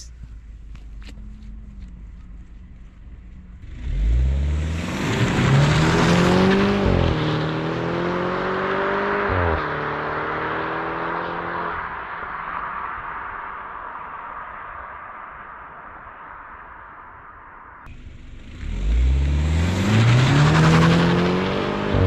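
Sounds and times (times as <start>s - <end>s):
car engine revving and accelerating: 3.4s - 14.2s, 17.9s - 22.0s.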